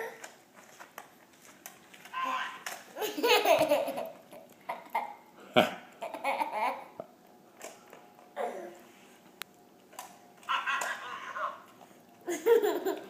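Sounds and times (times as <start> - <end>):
laughter: 3.0 - 4.2, 12.3 - 13.0.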